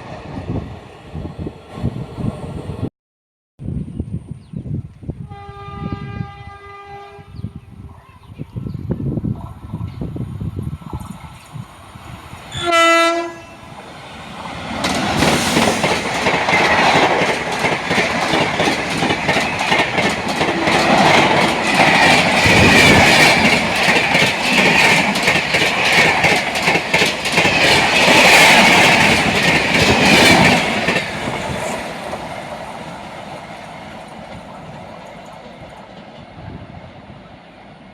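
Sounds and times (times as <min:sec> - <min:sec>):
train horn blast: 0:05.2 - 0:07.5, 0:12.5 - 0:13.7
train rushing past: 0:08.6 - 0:37.9
wheels clacking over rail joints: 0:14.0 - 0:36.4.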